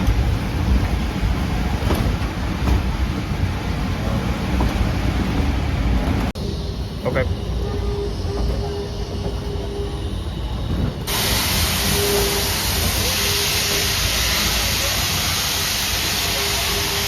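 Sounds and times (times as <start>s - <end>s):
steam hissing: 11.1s - 17.0s.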